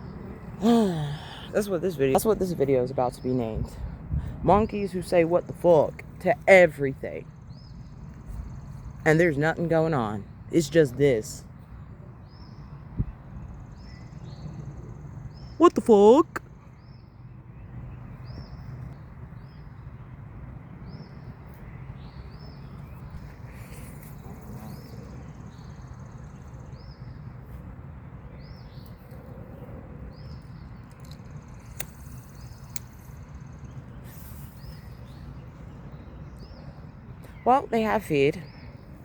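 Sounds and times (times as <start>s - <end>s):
small bird chirping: 30.1s - 39.0s
sharp clicks: 30.8s - 33.2s.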